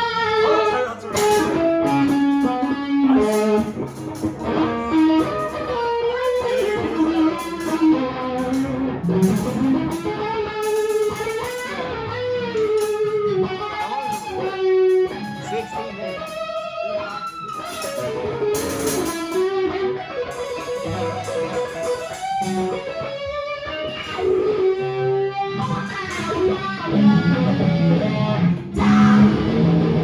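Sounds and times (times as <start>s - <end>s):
electric guitar lead line: 0.0s - 30.0s
sharp hits: 0.5s - 16.8s.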